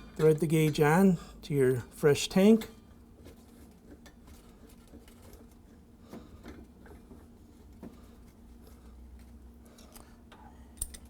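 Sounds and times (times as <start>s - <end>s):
light metallic clicks and taps: 10.8s - 11.0s.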